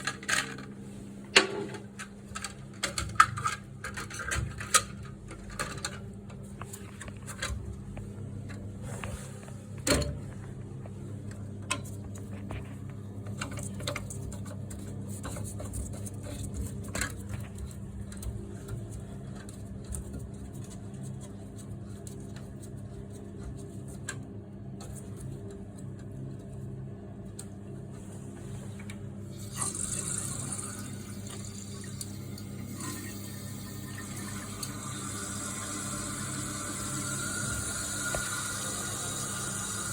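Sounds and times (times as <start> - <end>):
steady low hum: 0.0 - 39.9
water running into cistern: 29.3 - 39.9.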